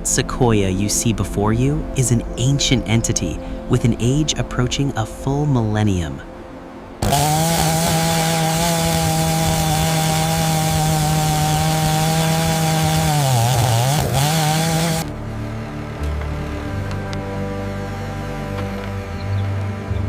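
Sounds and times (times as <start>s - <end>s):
chainsaw running: 7.0s - 15.1s.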